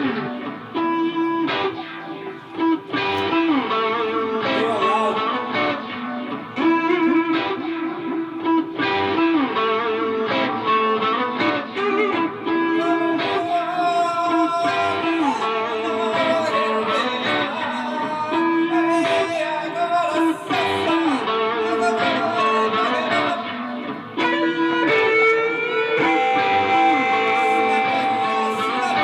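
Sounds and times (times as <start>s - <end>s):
live guitar music: 0.0s - 29.0s.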